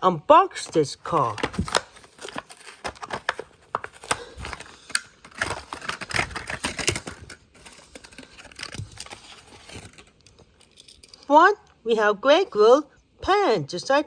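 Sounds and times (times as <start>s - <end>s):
plastic packaging torn open: 1.1s - 10.7s.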